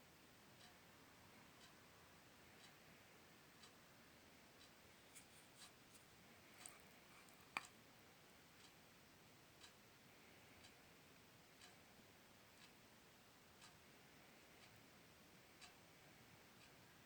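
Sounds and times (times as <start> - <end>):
faint ticking: 0.4 - 17.0
soft clicks: 5.1 - 7.8.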